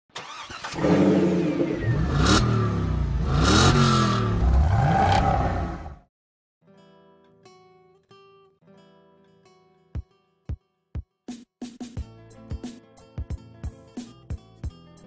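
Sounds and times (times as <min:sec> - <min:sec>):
car engine revving: 0:00.2 - 0:06.0.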